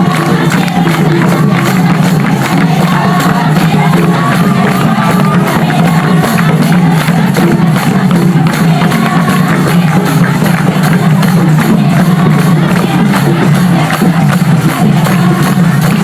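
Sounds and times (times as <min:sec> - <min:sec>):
loud music with steady beat: 0:00.0 - 0:12.6
crowd noise: 0:00.0 - 0:16.0.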